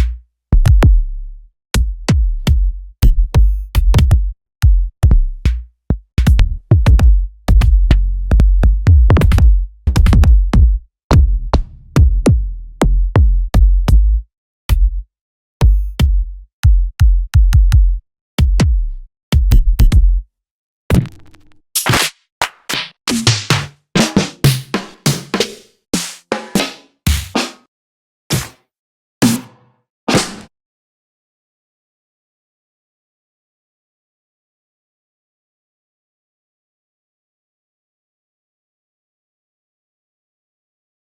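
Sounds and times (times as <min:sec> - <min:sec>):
sub-bass kicks: 0:00.0 - 0:01.1, 0:01.8 - 0:15.0, 0:15.6 - 0:20.2.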